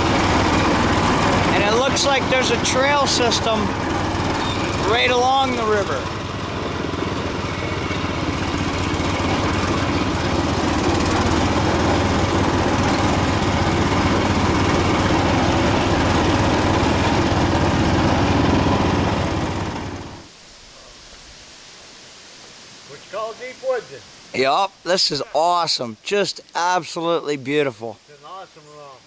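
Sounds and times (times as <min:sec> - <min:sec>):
garden tractor engine running: 0:00.0 - 0:20.3.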